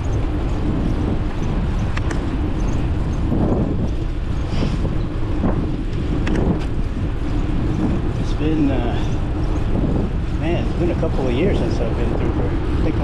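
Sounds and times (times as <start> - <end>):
road and traffic noise: 0.0 - 13.0
wind rumbling on microphone: 0.0 - 13.0
light clicks: 1.8 - 2.8.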